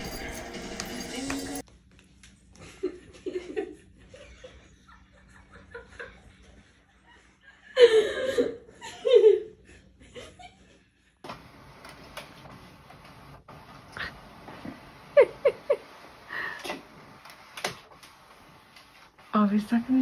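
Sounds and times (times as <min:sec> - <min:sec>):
people laughing: 0:02.6 - 0:11.1, 0:15.1 - 0:16.5.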